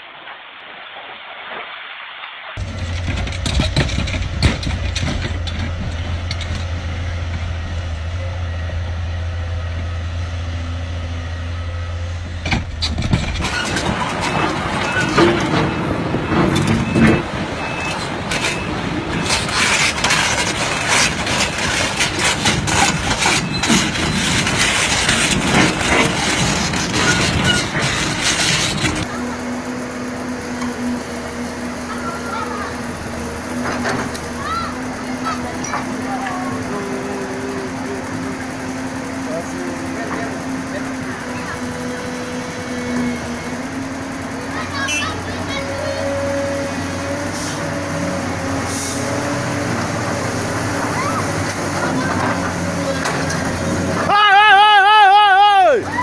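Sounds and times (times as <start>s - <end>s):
clattering with sharp knocks: 2.6s - 8.2s, 12.2s - 29.1s
heavy vehicle engine humming: 2.6s - 56.0s.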